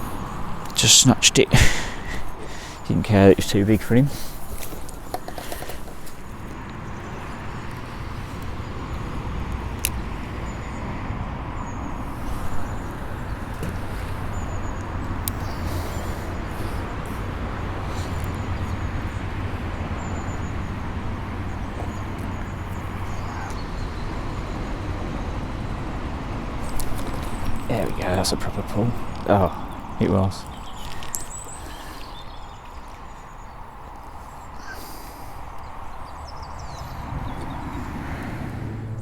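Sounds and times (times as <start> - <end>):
passing traffic rumble: 0.0 - 39.0
faint clicks: 4.2 - 10.6, 26.6 - 28.1, 29.1 - 33.1.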